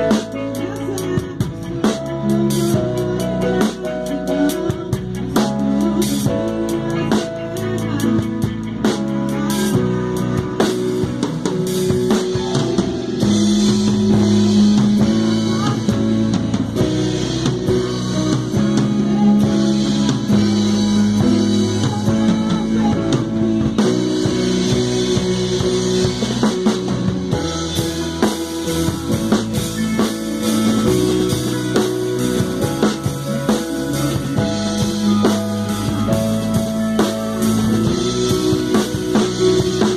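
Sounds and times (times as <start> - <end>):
rock band playing: 0.0 - 39.9.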